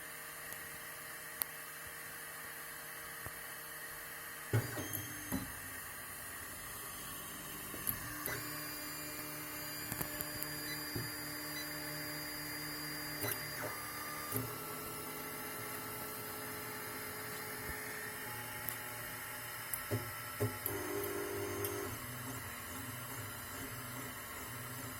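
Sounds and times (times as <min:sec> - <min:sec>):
stepper motors whining: 0:06.6 - 0:15.0.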